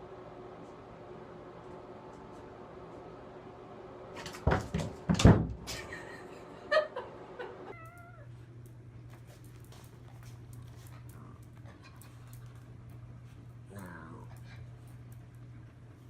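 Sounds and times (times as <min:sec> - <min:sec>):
cat meowing: 0:07.7 - 0:08.3.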